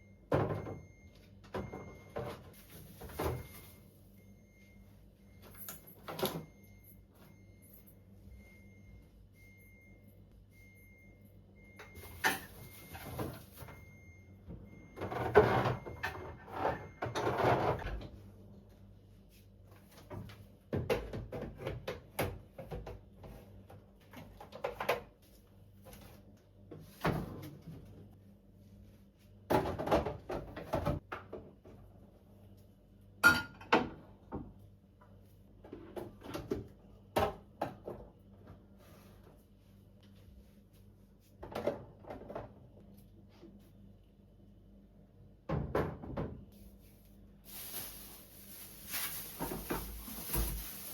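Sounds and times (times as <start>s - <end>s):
faint high beep: 6.4s - 13.1s
groceries knocking on fridge shelves: 47.5s - 50.9s
packaging rustling: 47.5s - 50.9s.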